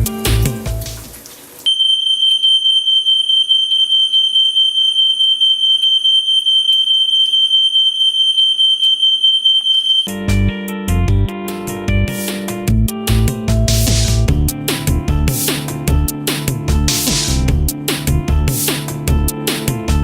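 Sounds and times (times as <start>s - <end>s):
smoke alarm tone: 1.7s - 10.1s.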